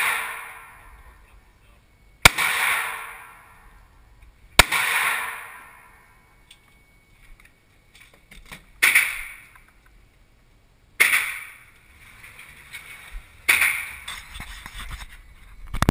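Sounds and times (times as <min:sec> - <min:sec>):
pistol shots: 0:00.0 - 0:01.0, 0:02.2 - 0:03.8, 0:04.6 - 0:06.1, 0:08.8 - 0:09.5, 0:11.0 - 0:11.7, 0:13.5 - 0:14.0.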